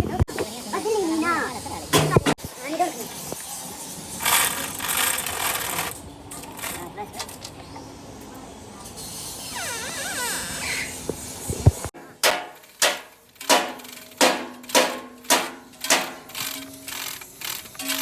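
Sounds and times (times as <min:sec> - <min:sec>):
hammer blows ringing: 0:12.2 - 0:16.4.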